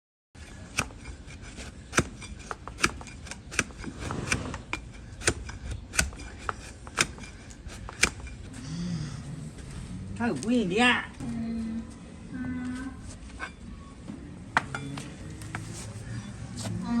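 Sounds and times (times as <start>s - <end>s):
blade cutting hoof: 0.4s - 8.5s.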